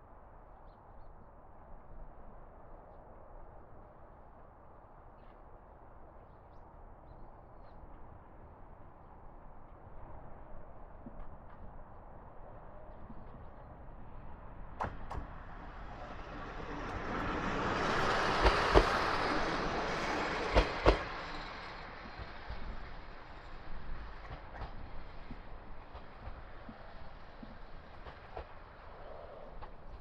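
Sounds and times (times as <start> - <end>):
diesel railcar passing: 8.5 - 30.0
wheels clacking over rail joint: 14.8 - 30.0.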